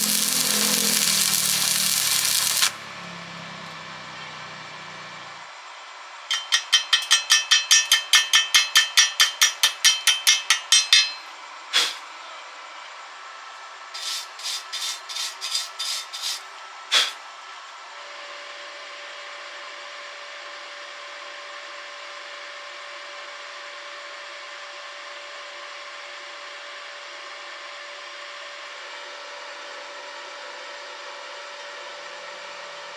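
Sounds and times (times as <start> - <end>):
metal-on-metal hand tool strokes: 0.0 - 2.8, 6.3 - 12.0, 14.0 - 17.2.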